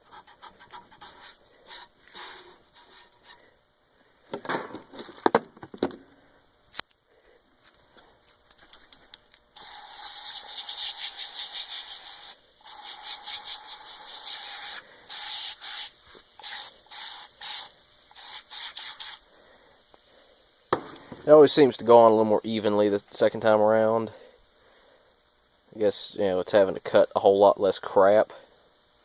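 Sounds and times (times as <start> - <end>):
aerosol can spraying: 1.0 - 3.2, 9.6 - 19.3.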